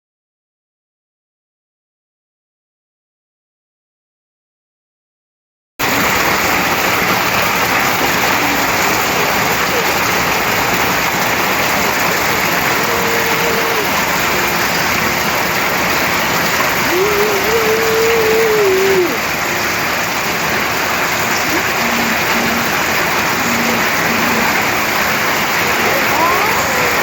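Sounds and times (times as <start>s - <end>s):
heavy rain falling: 5.8s - 27.0s.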